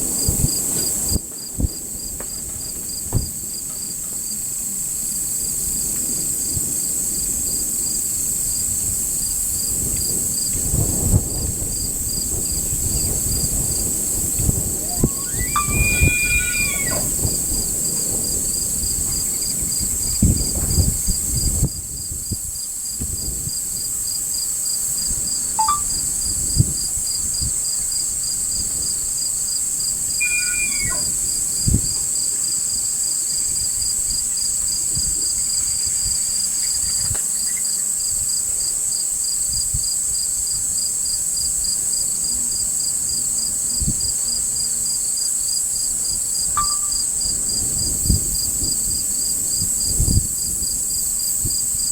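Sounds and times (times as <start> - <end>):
insect chorus trilling: 2.3 - 51.9
elk bugling: 14.8 - 17.5, 25.6 - 26.0, 30.2 - 31.6.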